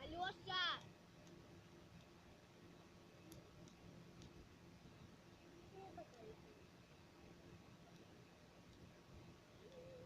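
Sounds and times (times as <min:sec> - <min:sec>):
faint ticks: 0:03.2 - 0:04.4, 0:09.6 - 0:10.0.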